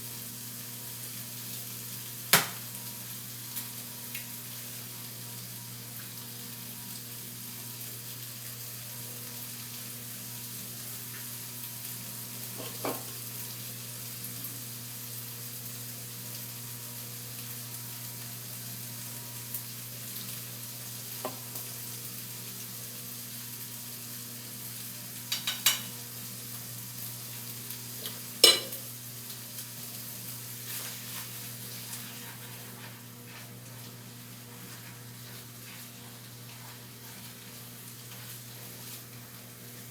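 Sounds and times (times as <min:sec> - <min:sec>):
food sizzling in a frying pan: 0:00.0 - 0:39.9
utensil clinking against pan: 0:28.0 - 0:28.8.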